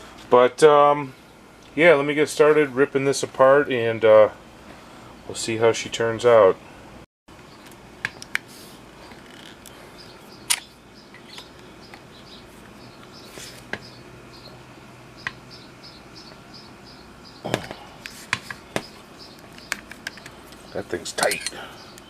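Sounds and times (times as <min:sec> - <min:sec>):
hand tools clicking on metal: 0:21.1 - 0:22.0.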